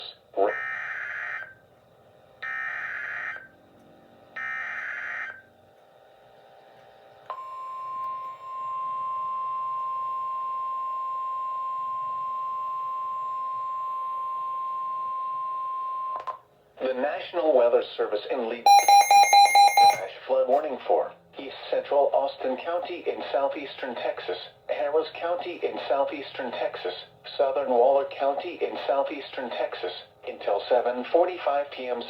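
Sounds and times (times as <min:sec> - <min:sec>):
steady alert tone: 0:18.7 - 0:20.1.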